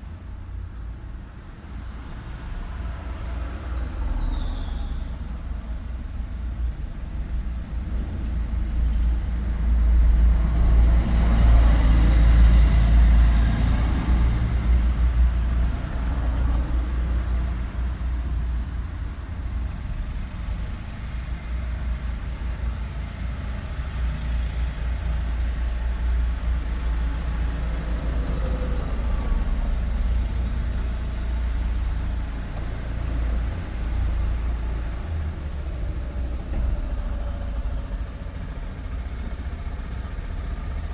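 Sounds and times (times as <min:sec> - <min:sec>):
low rumble of road traffic: 0:00.0 - 0:40.9.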